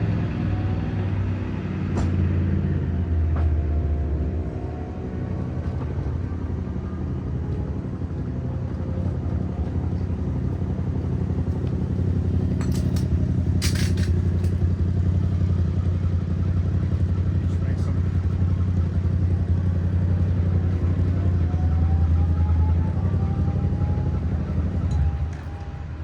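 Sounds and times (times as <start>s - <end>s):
low mechanical motor hum: 0.0s - 26.0s.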